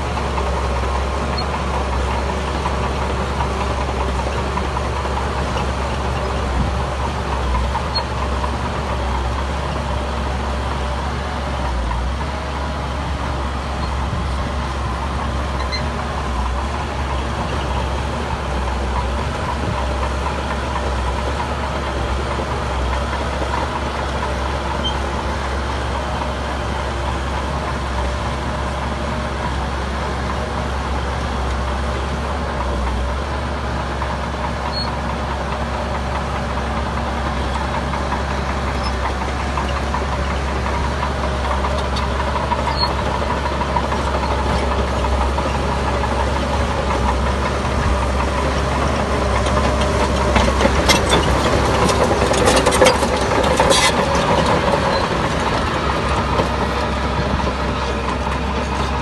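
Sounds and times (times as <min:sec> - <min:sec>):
diesel engine running: 0:00.0 - 0:59.0
sharp knocks and clatter: 0:49.4 - 0:55.6.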